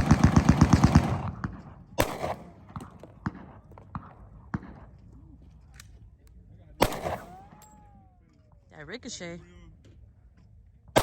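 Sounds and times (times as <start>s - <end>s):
rapid gunshots: 0.0s - 4.9s, 6.8s - 7.4s
distant gunshots: 0.0s - 5.0s, 6.8s - 7.9s.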